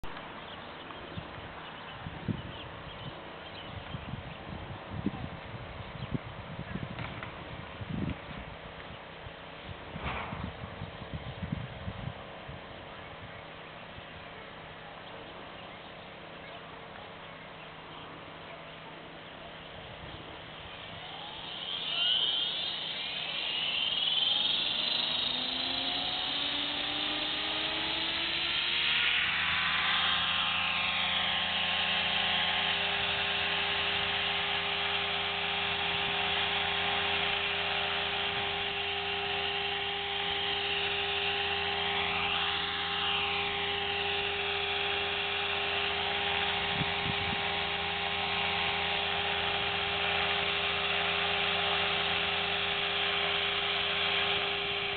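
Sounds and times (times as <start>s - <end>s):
rc helicopter motor whine: 0.0s - 54.9s
rotor buzz: 17.1s - 54.9s.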